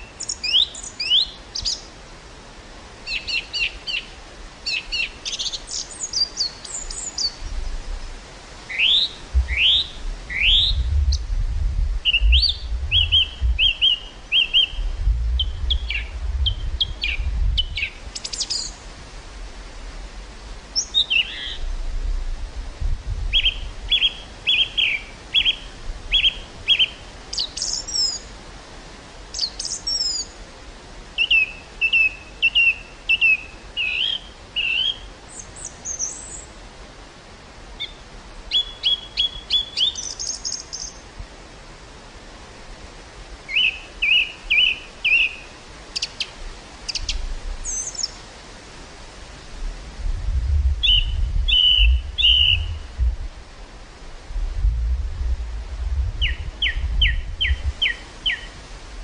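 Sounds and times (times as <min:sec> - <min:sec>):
small birds chirping: 0:00.0 - 0:01.9, 0:03.0 - 0:07.8, 0:08.7 - 0:11.3, 0:12.0 - 0:18.9, 0:20.8 - 0:21.6, 0:23.3 - 0:28.3, 0:29.3 - 0:30.4, 0:31.2 - 0:36.5, 0:37.8 - 0:41.1, 0:43.5 - 0:48.2, 0:50.8 - 0:53.0, 0:56.2 - 0:58.6
wind rumble on microphone: 0:06.0 - 0:27.3, 0:46.4 - 0:59.0.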